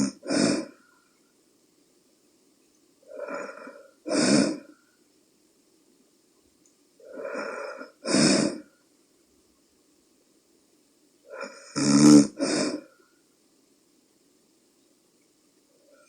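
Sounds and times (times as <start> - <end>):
woman snoring: 0.0 - 0.8, 3.1 - 4.8, 7.0 - 8.7, 11.3 - 12.9.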